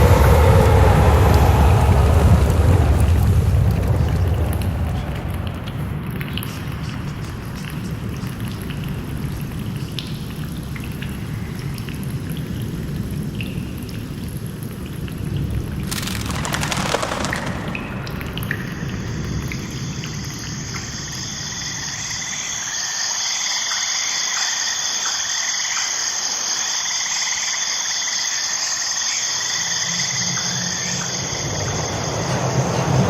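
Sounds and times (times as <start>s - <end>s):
low rumble: 0.0s - 6.5s, 15.3s - 20.3s
frogs and insects trilling: 15.4s - 33.0s.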